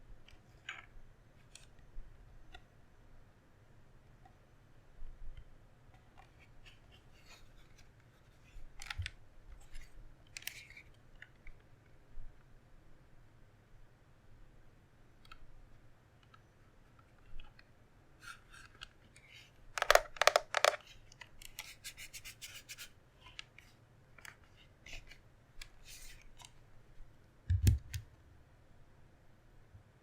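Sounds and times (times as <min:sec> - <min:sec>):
clicks of small hard parts: 0:19.8 - 0:21.6.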